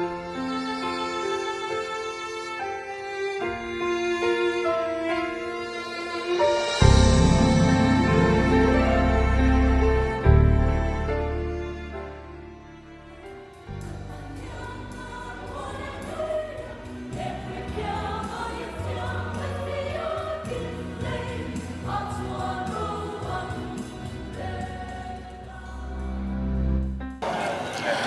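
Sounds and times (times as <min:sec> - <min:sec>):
choir singing held chords: 0:27.2 - 0:28.0.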